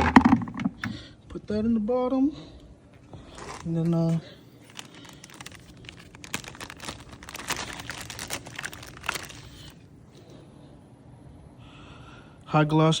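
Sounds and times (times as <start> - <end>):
packaging crinkling and rustling: 3.0 - 9.8.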